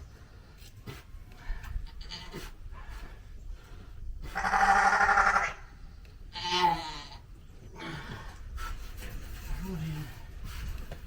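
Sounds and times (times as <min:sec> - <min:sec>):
sheep bleating: 0:04.4 - 0:05.6.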